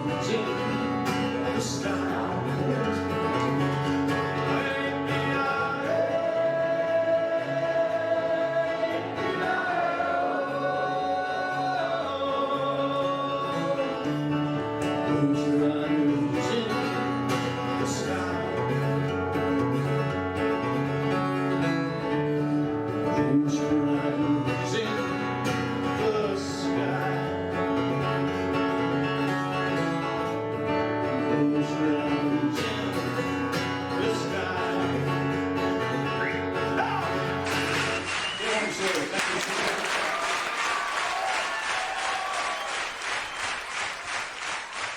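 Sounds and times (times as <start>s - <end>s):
person singing: 0.0s - 19.9s, 22.2s - 27.4s, 31.0s - 33.3s
acoustic guitar: 0.0s - 44.9s.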